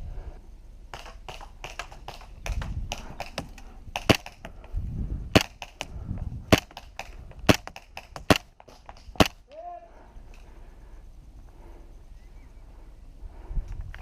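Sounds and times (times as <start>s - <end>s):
airsoft gun shots: 0.9s - 4.5s, 5.3s - 5.9s, 6.5s - 9.4s.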